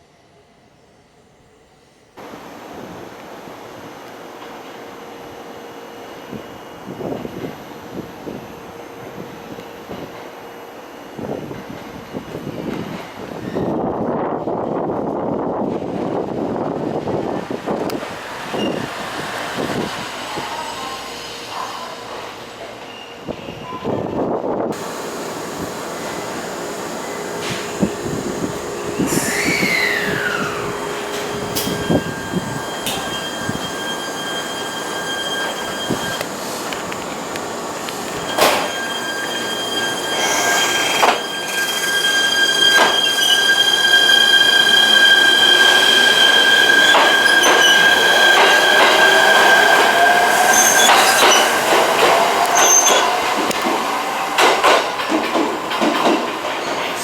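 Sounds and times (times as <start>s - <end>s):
train running on rails: 0.1s - 57.0s
wheel squeal: 18.5s - 19.0s, 26.1s - 36.6s, 37.8s - 57.0s
squealing tone sweeping down: 26.1s - 36.3s, 38.1s - 54.4s.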